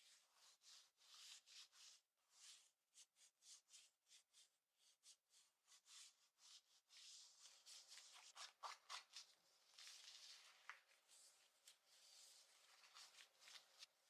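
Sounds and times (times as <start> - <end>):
fabric being scratched: 6.9 - 14.0.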